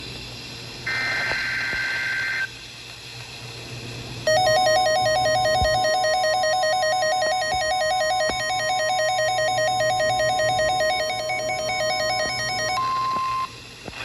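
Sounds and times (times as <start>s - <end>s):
warbling electronic alert tone: 4.3s - 12.8s.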